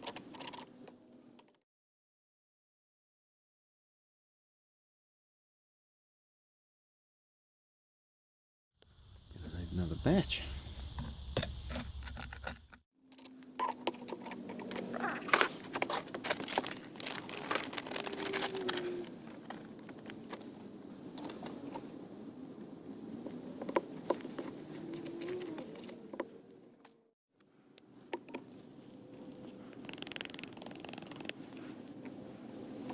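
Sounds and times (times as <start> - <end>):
cement scraping: 10.7 - 12.8.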